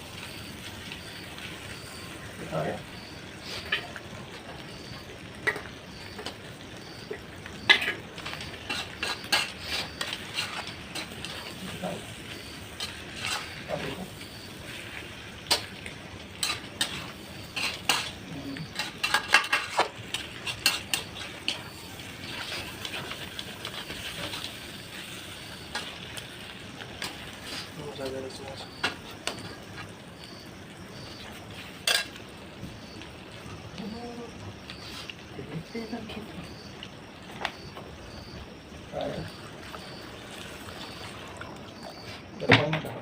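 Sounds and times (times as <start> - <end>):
frying hiss: 0.0 - 43.0
metal spoon scraping a pan: 7.6 - 26.1, 31.5 - 32.2.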